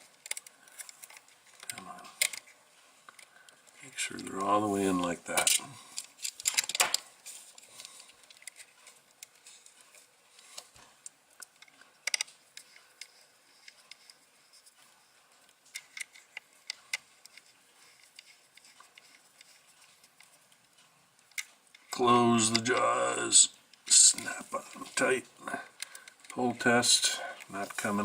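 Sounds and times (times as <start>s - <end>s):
small clicks and taps of wires: 10.4s - 14.8s.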